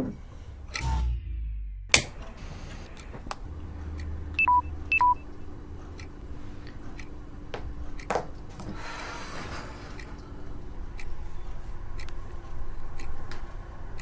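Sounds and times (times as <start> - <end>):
two-note electronic beep: 4.4 - 5.3.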